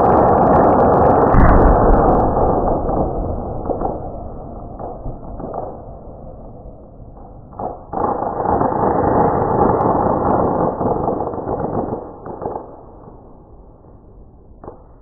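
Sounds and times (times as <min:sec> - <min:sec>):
firework bursting: 0:00.0 - 0:06.0.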